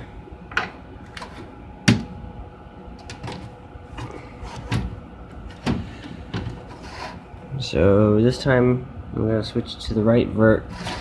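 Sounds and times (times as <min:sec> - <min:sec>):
clicks and knocks of metal and plastic: 0:03.0 - 0:06.6.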